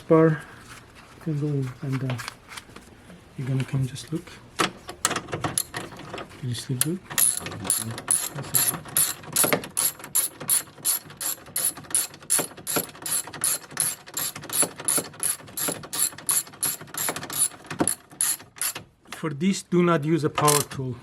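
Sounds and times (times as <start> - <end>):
ratchet wrench clicking: 7.2 - 18.8.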